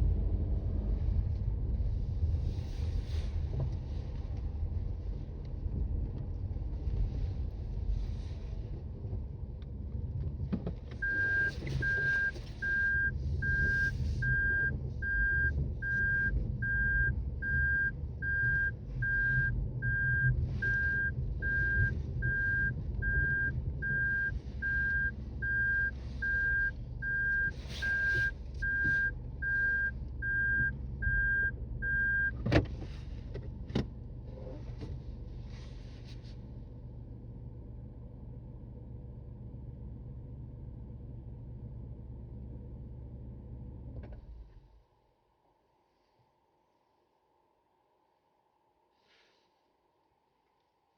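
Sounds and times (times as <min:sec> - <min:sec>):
car rumble: 0:00.0 - 0:45.0
reverse warning beeping: 0:11.0 - 0:32.4.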